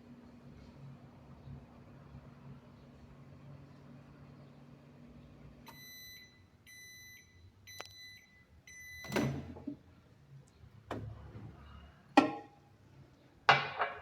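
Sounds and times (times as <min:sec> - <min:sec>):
microwave oven humming: 0:00.0 - 0:12.7
microwave beeps: 0:05.6 - 0:09.7.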